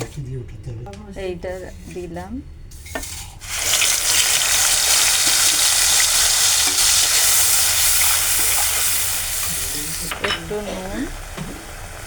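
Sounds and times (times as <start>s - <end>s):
paste sizzling in hot oil: 3.2s - 12.0s.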